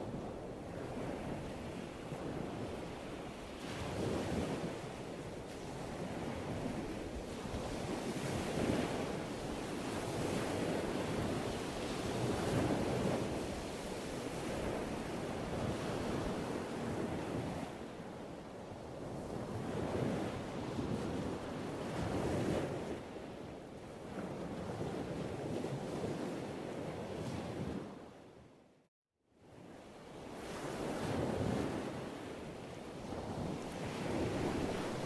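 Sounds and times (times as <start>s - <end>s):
ocean waves breaking: 33.0s - 35.0s.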